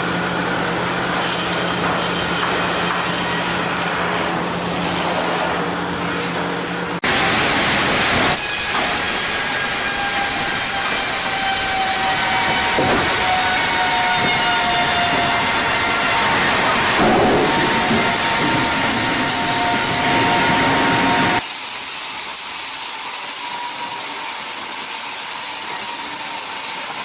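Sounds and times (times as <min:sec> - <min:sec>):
sawmill machinery humming: 0:00.0 - 0:21.4
saw cutting wood: 0:07.1 - 0:21.4.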